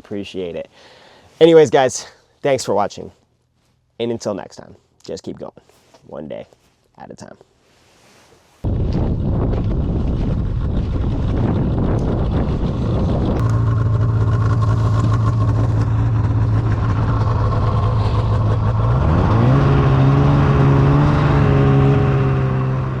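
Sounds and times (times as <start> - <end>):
wind noise: 8.6 - 23.0
vehicle engine revving: 9.1 - 23.0.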